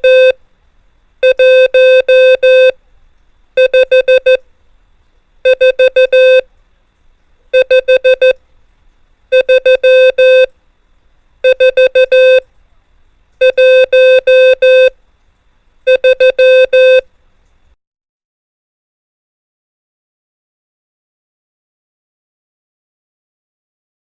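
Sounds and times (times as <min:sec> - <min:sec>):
morse code beeps: 0:00.0 - 0:00.4, 0:01.2 - 0:02.8, 0:03.6 - 0:04.4, 0:05.5 - 0:06.4, 0:07.6 - 0:08.4, 0:09.3 - 0:10.5, 0:11.4 - 0:12.4, 0:13.4 - 0:14.9, 0:15.9 - 0:17.0.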